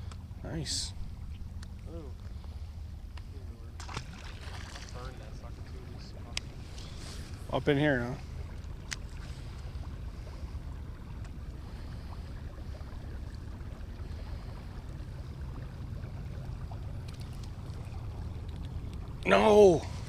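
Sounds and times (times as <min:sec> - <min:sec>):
boat engine rumble: 0:00.0 - 0:20.0
faint ticks: 0:17.0 - 0:19.3.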